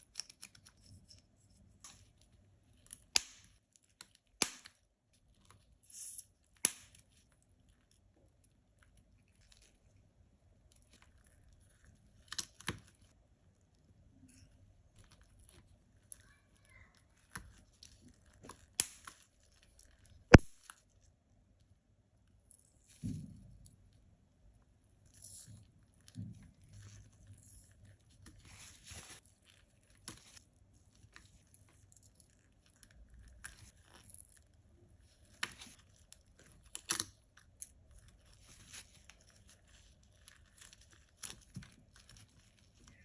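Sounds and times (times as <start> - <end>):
soft crinkling: 0.0 - 43.0.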